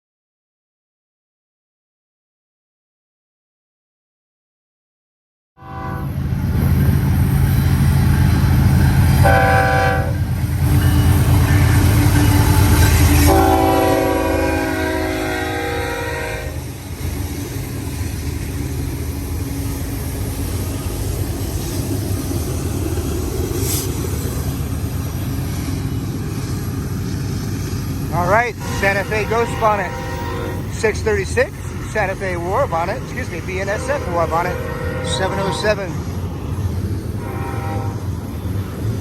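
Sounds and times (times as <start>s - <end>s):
train horn blasts: 5.6s - 6.2s, 9.2s - 10.3s, 12.3s - 16.6s, 28.2s - 30.8s, 33.6s - 36.0s, 37.2s - 38.5s
diesel locomotive engine rumble: 5.6s - 39.0s.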